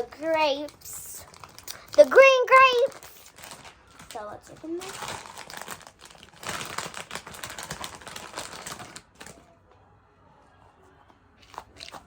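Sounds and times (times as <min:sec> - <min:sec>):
plastic packaging crinkling: 0:00.0 - 0:09.5.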